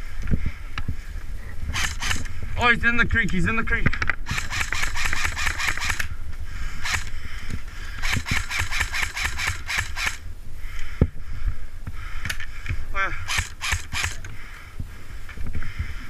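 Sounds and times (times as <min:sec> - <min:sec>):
airsoft rifle firing bursts: 0:01.7 - 0:02.3, 0:04.2 - 0:06.1, 0:06.8 - 0:07.2, 0:08.0 - 0:10.3, 0:13.2 - 0:14.3.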